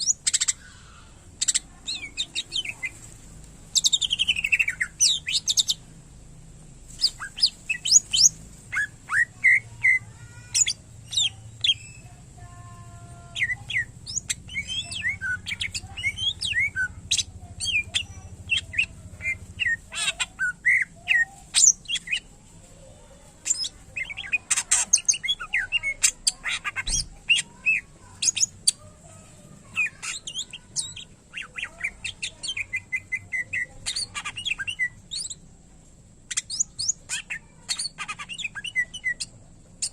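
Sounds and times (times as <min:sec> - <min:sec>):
bird singing chirps and whistles: 0:03.8 - 0:05.8, 0:13.3 - 0:22.2, 0:36.3 - 0:39.9.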